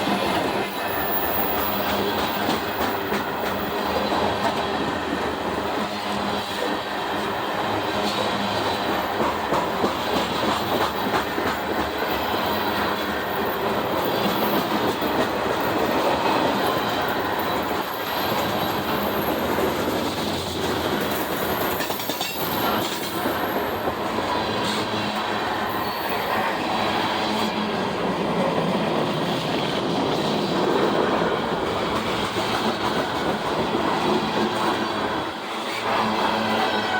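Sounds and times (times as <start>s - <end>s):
train wheels rumbling on rails: 0.0s - 36.9s
high wheel squeal: 25.5s - 26.7s.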